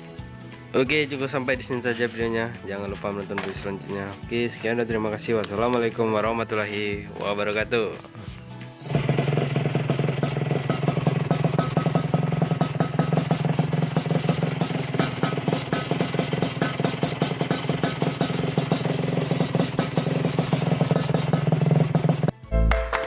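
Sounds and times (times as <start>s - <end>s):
two-stroke engine idling: 8.8s - 22.3s.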